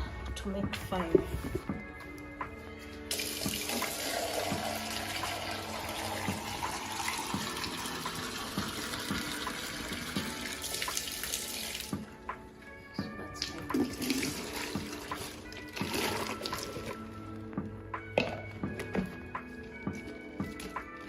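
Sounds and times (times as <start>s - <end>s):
water pouring into a bucket: 3.1s - 12.0s, 13.4s - 17.0s.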